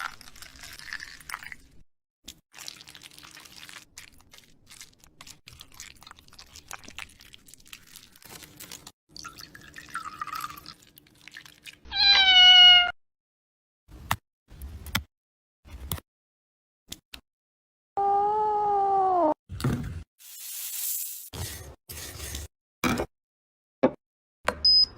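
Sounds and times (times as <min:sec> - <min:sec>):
cat meowing: 0:11.9 - 0:13.0.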